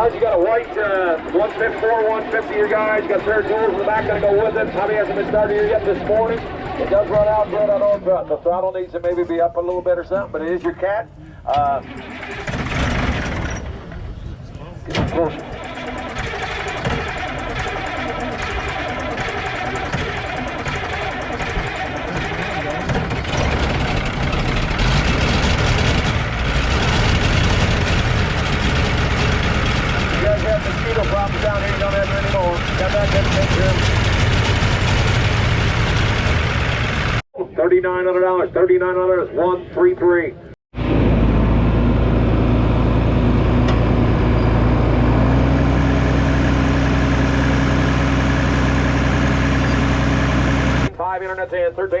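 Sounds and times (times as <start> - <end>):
tractor engine idling: 0.0 - 37.2, 41.1 - 51.2.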